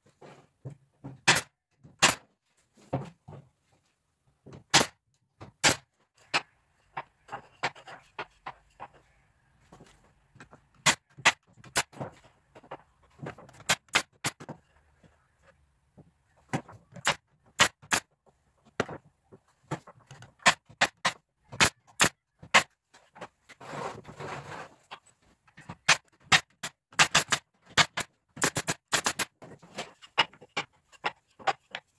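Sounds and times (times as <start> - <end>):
wooden parts knocking: 5.4 - 23.4, 24.9 - 31.9
short scraping noise: 23.6 - 24.8.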